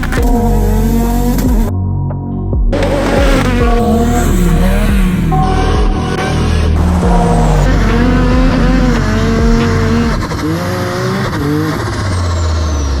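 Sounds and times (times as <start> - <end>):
vehicle engine revving: 2.8 - 13.0.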